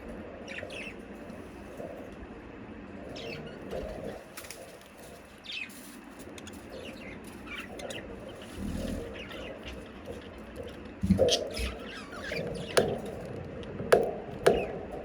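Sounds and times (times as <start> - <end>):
budgerigars chirping: 0.4 - 2.0, 3.0 - 4.2, 6.5 - 13.2, 14.0 - 14.9.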